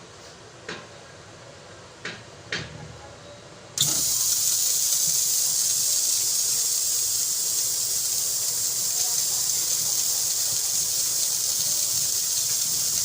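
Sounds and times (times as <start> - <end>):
pressurised gas hissing: 3.8 - 13.0
sharp clicks: 3.8 - 13.0.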